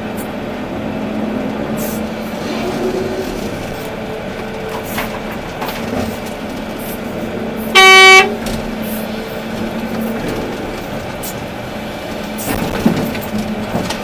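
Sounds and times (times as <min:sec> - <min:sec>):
excavator diesel engine running: 0:00.0 - 0:14.0
short horn blast: 0:07.8 - 0:08.5.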